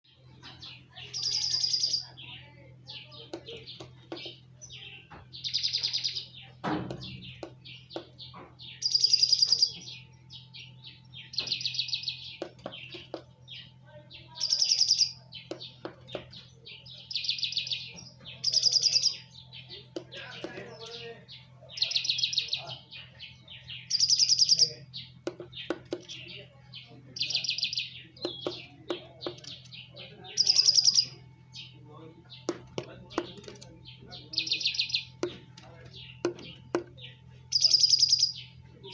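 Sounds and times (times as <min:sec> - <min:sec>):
soft bird chirps: 0:00.0 - 0:38.9
bird high trill: 0:00.6 - 0:03.1, 0:04.6 - 0:07.3, 0:08.7 - 0:12.2, 0:13.6 - 0:15.3, 0:16.6 - 0:19.9, 0:21.8 - 0:24.9, 0:30.3 - 0:31.2, 0:37.1 - 0:38.9.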